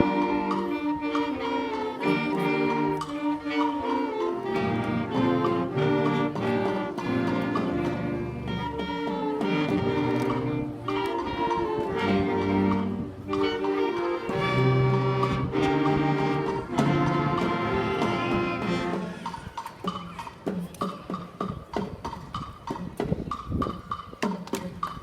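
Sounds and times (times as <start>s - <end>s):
concert band playing: 0.0s - 20.4s.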